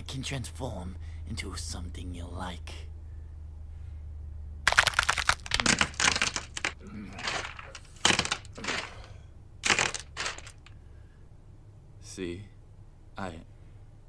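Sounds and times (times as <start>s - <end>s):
cracking and crunching: 4.7s - 10.8s.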